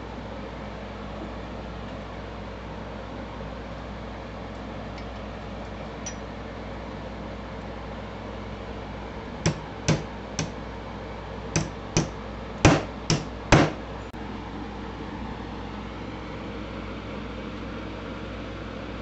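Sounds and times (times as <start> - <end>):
hammer blows on steel: 9.5 - 10.6, 11.6 - 13.8.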